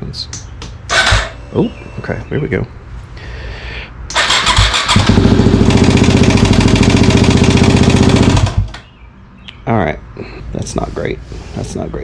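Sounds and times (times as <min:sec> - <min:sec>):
electric starter: 0:00.9 - 0:01.4, 0:04.1 - 0:08.8
motorcycle engine knocking rattle: 0:04.2 - 0:08.7.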